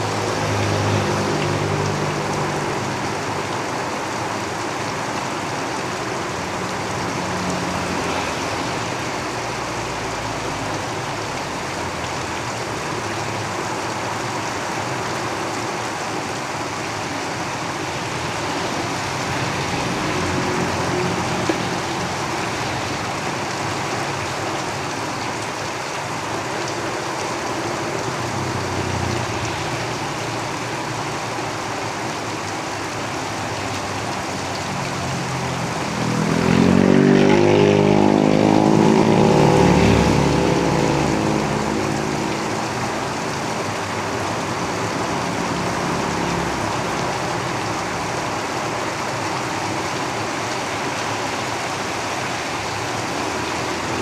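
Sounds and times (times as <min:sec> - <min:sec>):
vehicle passing: 0:00.0 - 0:03.6, 0:05.8 - 0:11.4, 0:17.0 - 0:24.9, 0:27.3 - 0:31.8, 0:33.0 - 0:48.4
rain drumming on a roof: 0:00.0 - 0:54.0.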